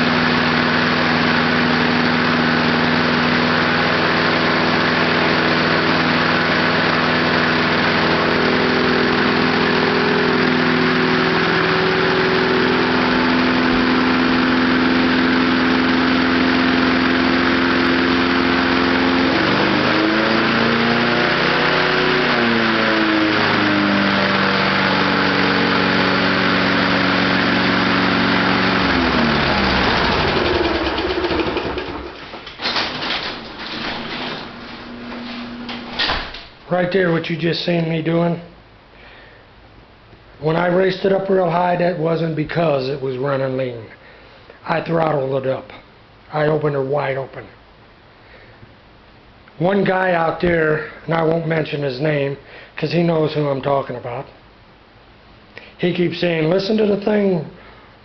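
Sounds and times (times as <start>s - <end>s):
small lawnmower engine running: 0.0s - 36.1s.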